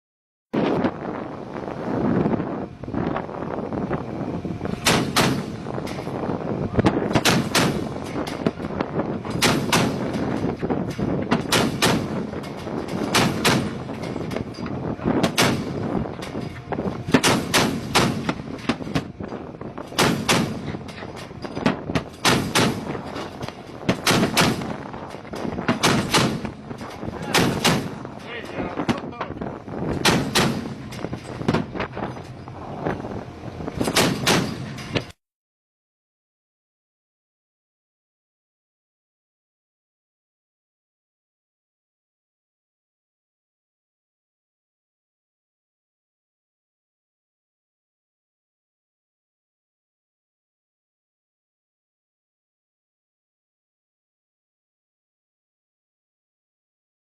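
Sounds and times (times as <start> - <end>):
wind rushing: 0.6 - 35.1
boat noise: 0.9 - 35.1
gunshots: 4.8 - 5.6, 7.1 - 8.1, 9.4 - 10.3, 11.4 - 12.3, 13.1 - 13.8, 15.2 - 15.8, 17.1 - 19.1, 20.0 - 20.8, 22.2 - 23.2, 23.9 - 24.8, 25.7 - 26.6, 27.2 - 28.2, 30.0 - 30.9, 33.8 - 34.7.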